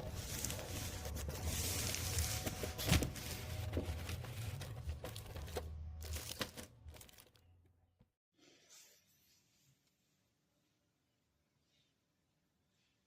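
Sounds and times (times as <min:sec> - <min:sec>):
plastic packaging crinkling: 0:00.0 - 0:07.6.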